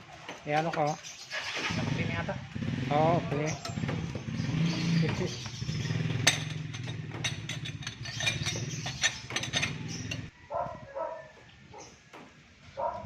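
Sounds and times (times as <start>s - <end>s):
engine running: 1.3s - 10.3s
metal tools clinking: 3.5s - 3.9s, 5.2s - 10.3s
dog barking: 10.5s - 11.9s, 12.7s - 13.0s.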